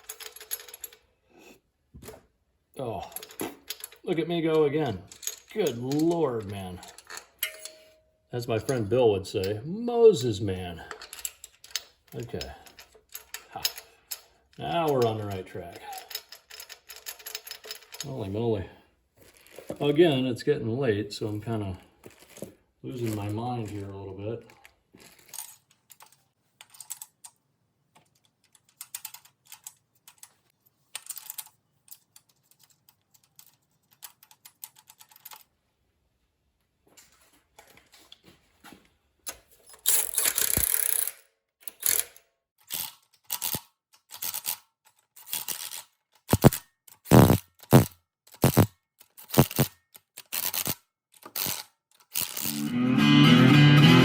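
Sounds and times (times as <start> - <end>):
metallic tool clicks and taps: 7.4 - 7.9.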